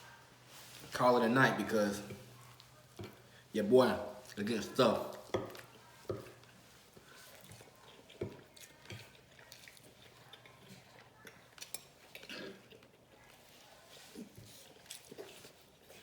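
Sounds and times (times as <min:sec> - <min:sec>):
person chewing: 0:04.1 - 0:16.0.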